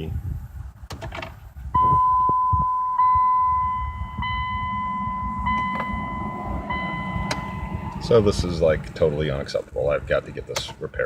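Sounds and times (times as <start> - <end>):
dashboard warning chime: 1.8 - 8.5.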